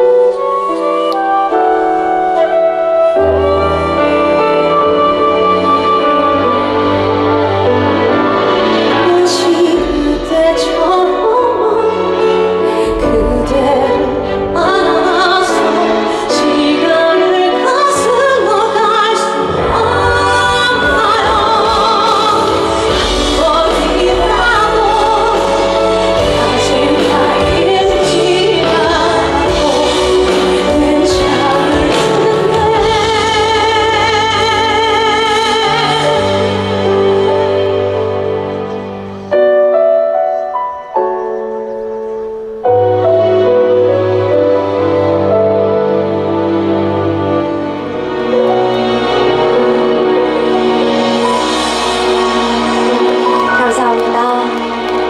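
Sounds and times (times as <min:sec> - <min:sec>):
woman singing with vibrato: 0:02.4 - 0:38.0.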